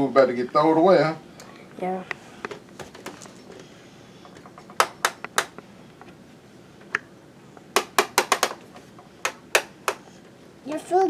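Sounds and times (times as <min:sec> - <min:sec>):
sharp clicks and taps: 0:04.8 - 0:05.6, 0:07.8 - 0:10.0.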